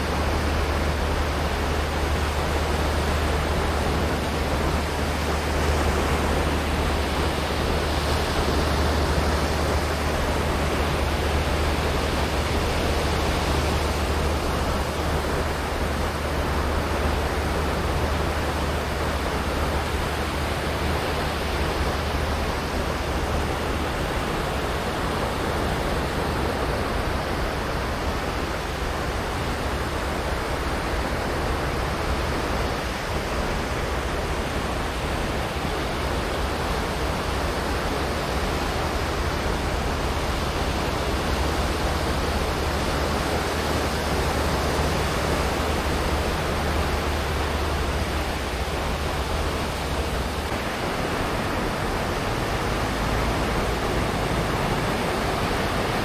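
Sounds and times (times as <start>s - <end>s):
waves washing onto beach: 0.0s - 56.0s.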